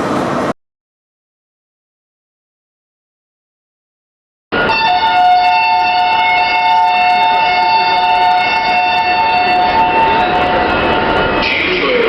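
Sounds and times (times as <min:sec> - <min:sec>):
two-note alarm tone: 0:04.5 - 0:11.4.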